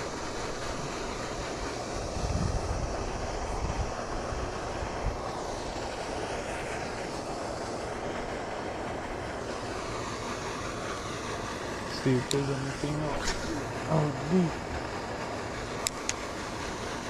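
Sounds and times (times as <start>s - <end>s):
wind gusts on microphone: 0.0s - 8.4s
airplane engine drone: 0.0s - 17.0s.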